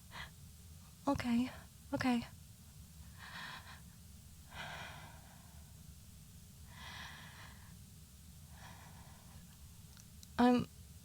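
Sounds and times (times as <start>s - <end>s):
person breathing deeply: 4.5s - 5.7s, 6.7s - 7.8s.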